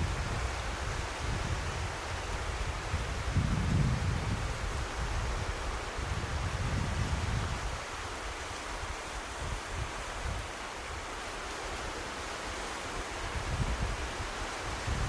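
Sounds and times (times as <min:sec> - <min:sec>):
wind buffeting microphone: 0:00.0 - 0:08.0, 0:13.2 - 0:15.0
surf hiss: 0:00.0 - 0:15.0.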